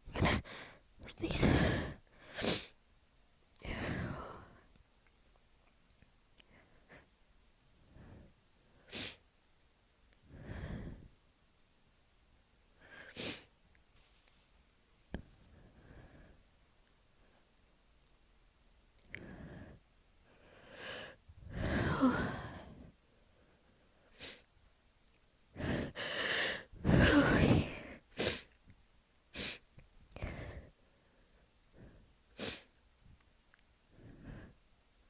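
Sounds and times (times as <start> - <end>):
person sneezing: 1.4 - 2.7, 8.9 - 9.2, 32.4 - 32.7
sharp sniffs: 8.9 - 9.2, 29.4 - 29.6, 32.4 - 32.7.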